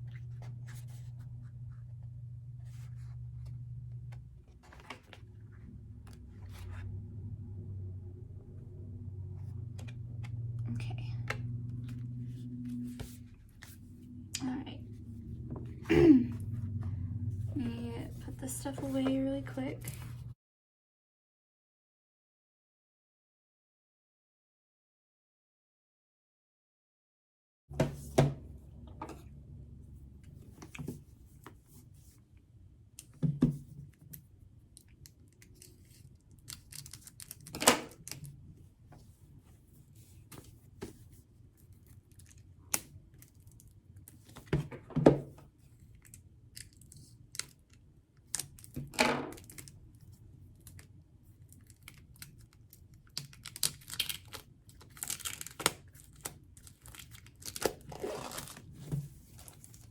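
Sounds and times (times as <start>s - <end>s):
crinkling and tearing wrapping: 51.5s - 58.8s.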